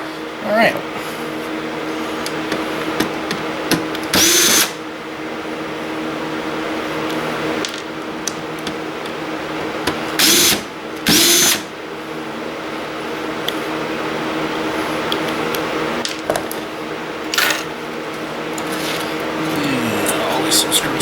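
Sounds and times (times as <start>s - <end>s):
electric drill-driver spinning: 4.0s - 4.8s, 10.2s - 11.7s, 17.2s - 17.7s, 18.6s - 19.3s.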